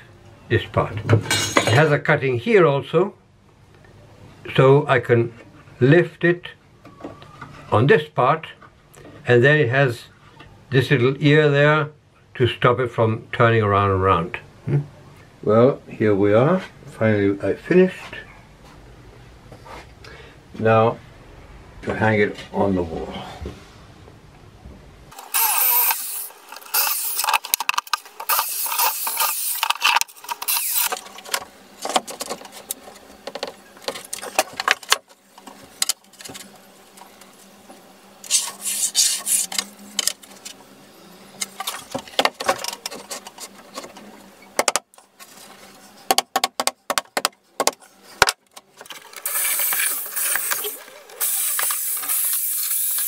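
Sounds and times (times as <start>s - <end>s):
power drill running: 25.2s - 27.5s, 28.2s - 31.0s, 49.2s - 53.0s
sharp clicks and knocks: 46.1s - 50.7s.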